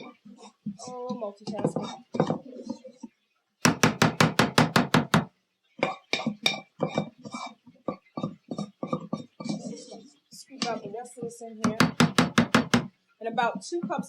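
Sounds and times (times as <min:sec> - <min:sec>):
knife chopping on a cutting board: 0:03.6 - 0:05.3, 0:11.6 - 0:12.9.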